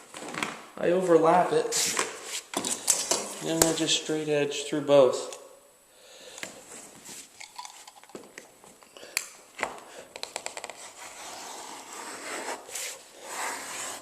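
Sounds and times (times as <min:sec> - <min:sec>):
soft scraping hiss: 0:00.9 - 0:10.1, 0:10.7 - 0:14.0
clicks and taps: 0:09.2 - 0:10.8
knife cutting vinyl: 0:10.7 - 0:14.0.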